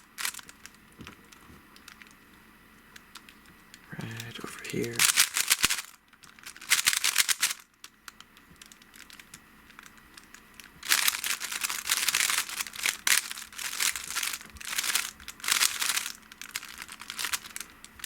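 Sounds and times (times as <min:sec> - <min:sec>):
puzzle cube plastic clicks: 0:02.9 - 0:18.0.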